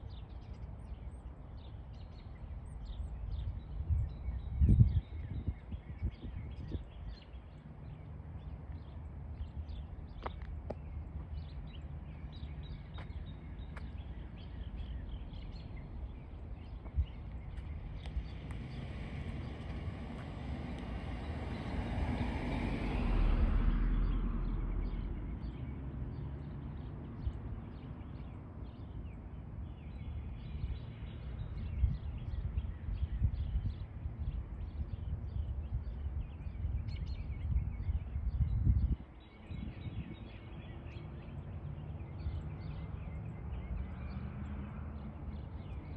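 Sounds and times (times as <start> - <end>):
steady low rumble: 3.3 - 25.6
vehicle passing by: 17.5 - 27.6.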